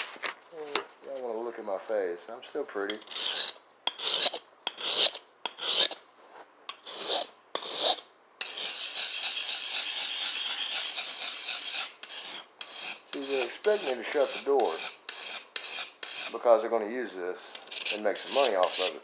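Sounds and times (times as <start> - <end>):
knife sharpening on a stone: 2.9 - 6.0, 6.7 - 16.4, 17.5 - 19.0.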